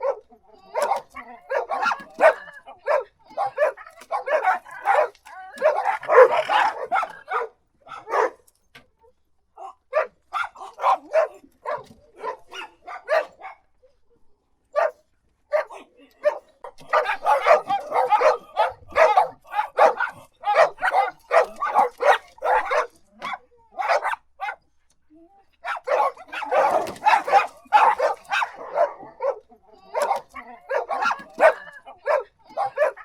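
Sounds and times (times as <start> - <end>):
dogs barking: 0.0 - 8.5, 9.6 - 13.8, 14.7 - 24.6, 25.6 - 33.0.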